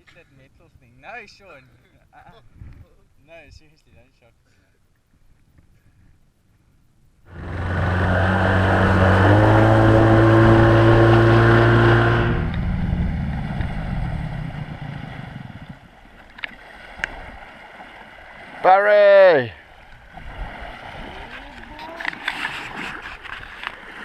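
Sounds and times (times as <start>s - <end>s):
boat motor running: 7.3s - 15.8s.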